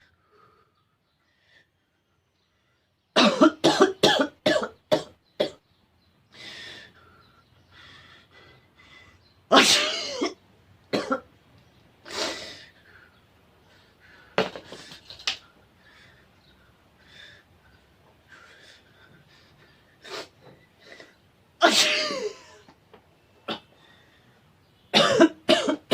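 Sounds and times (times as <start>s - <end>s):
breaths: 0.0s - 3.1s, 6.2s - 9.4s, 11.6s - 21.3s, 23.7s - 24.7s
person coughing: 3.2s - 5.6s, 9.5s - 10.4s, 11.0s - 11.3s, 21.6s - 22.6s, 24.9s - 25.9s.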